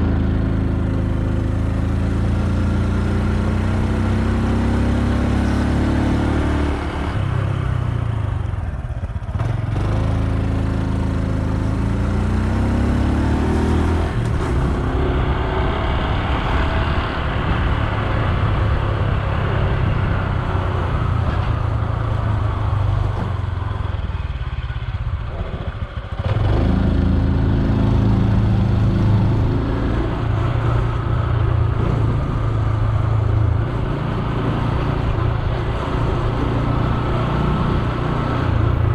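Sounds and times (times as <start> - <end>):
motorcycle engine accelerating: 0.0 - 38.9.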